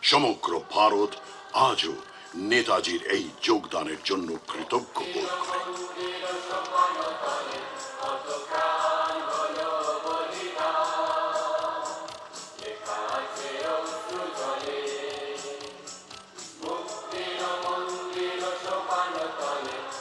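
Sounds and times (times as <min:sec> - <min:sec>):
choir singing held notes: 0:00.0 - 0:20.0
steady beat: 0:01.8 - 0:14.7.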